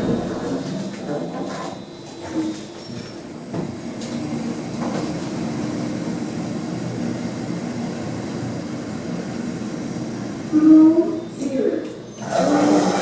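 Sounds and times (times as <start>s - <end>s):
lift drive humming: 0.0s - 2.2s.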